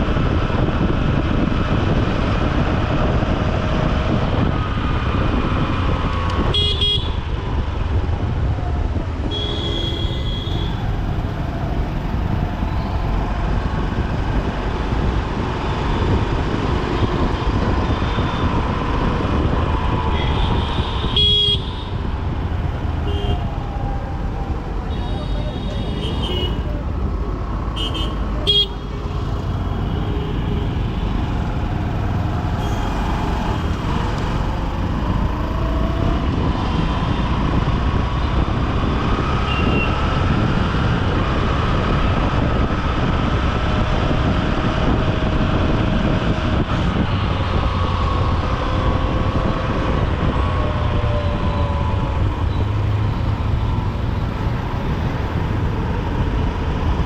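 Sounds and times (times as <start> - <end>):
vehicle horns honking: 6.5 - 7.2, 9.3 - 10.8, 20.2 - 21.9, 24.9 - 26.7, 27.8 - 28.9, 32.6 - 33.1, 39.5 - 40.0.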